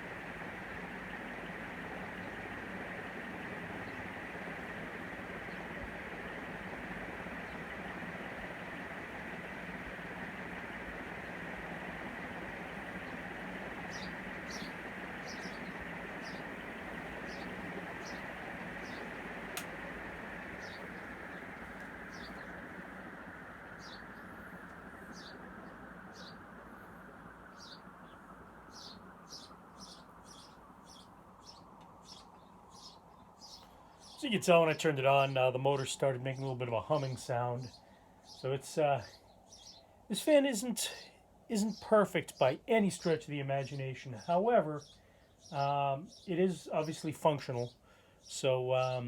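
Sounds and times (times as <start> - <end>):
fan motor hum: 0.0 - 44.9
ceiling fan rushing air: 0.0 - 49.0
small birds chirping: 0.0 - 49.0.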